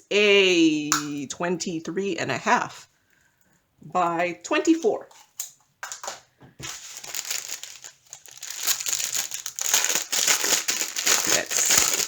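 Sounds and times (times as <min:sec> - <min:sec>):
plastic packaging crinkling: 0:05.1 - 0:12.0.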